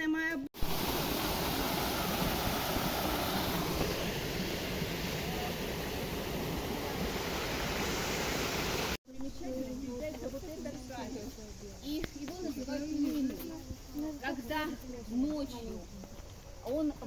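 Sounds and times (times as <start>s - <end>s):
sea waves washing in: 0.6s - 9.0s.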